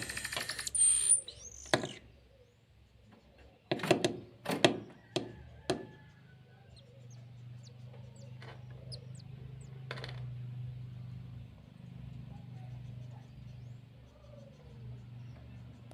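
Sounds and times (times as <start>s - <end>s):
high bird chirps: 0.0s - 2.1s, 6.7s - 9.9s
sharp knocks: 3.7s - 5.9s.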